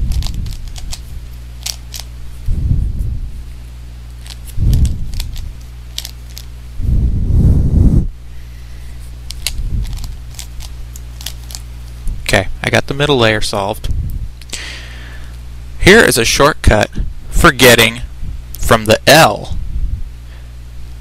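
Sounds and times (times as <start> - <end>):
low rumbles of handling: 0.0 - 14.5
steady low hum: 0.0 - 21.0
plastic puzzle cube clicking: 1.6 - 2.1, 6.0 - 6.5.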